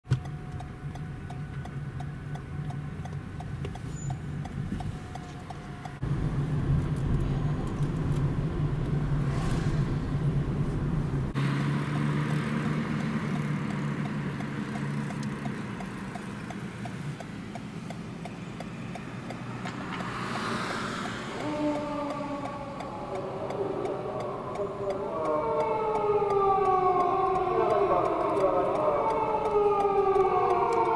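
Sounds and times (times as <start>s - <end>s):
vehicle engine and road noise: 0.0s - 30.9s
faint regular ticking: 0.2s - 6.0s, 12.2s - 20.2s.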